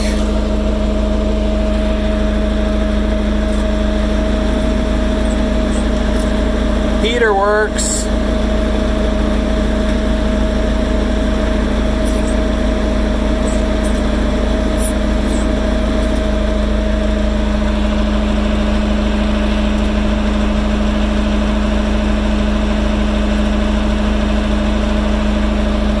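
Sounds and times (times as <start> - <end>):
high-pitched whine: 0.0 - 4.2, 11.3 - 21.3
diesel engine idling: 0.0 - 26.0.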